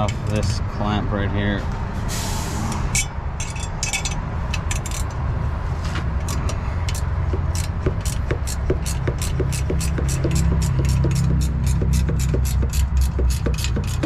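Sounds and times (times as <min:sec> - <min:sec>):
ratchet clicking: 0:02.8 - 0:05.2, 0:06.2 - 0:14.0.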